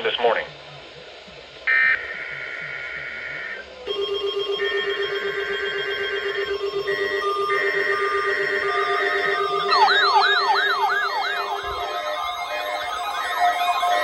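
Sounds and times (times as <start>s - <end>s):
steady pulsing buzz: 0.0s - 14.0s
screeching digital data bursts: 1.7s - 14.0s.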